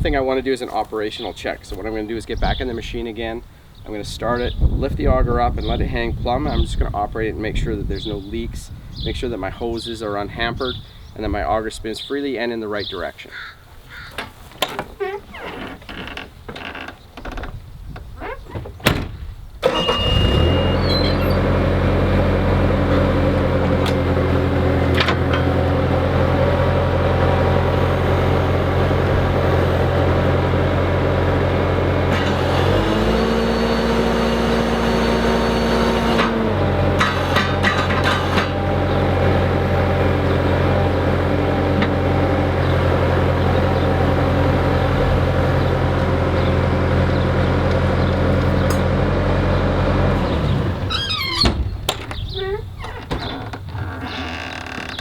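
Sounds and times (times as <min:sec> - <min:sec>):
engine starting and running: 0:19.6 - 0:55.0.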